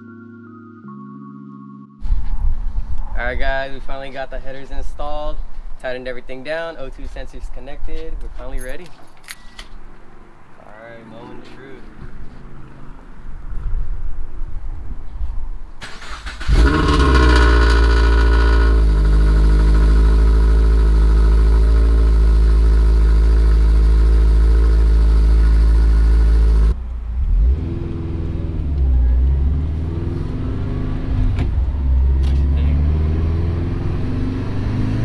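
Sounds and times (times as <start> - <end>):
car engine starting and idling: 15.8 - 35.0.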